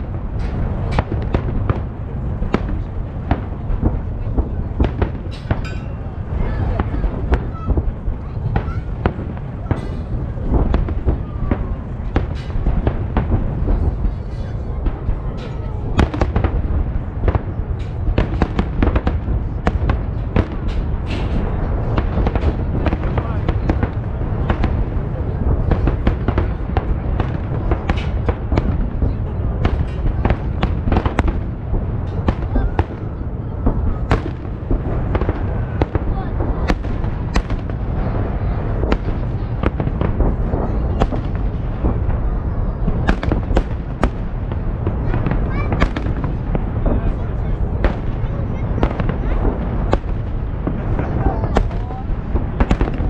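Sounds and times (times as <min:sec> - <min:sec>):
continuous low rumble: 0:00.0 - 0:53.0
fireworks shells bursting: 0:04.8 - 0:07.8
fireworks shells cracking: 0:05.3 - 0:06.1.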